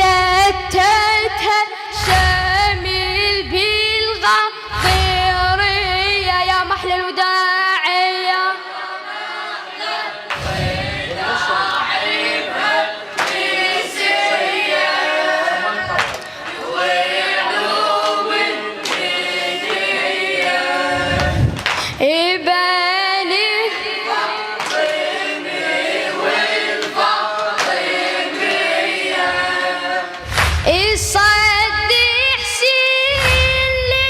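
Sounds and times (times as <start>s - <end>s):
choir-like voices singing: 0.0s - 32.4s
deep low thudding: 10.4s - 11.2s, 20.9s - 21.9s.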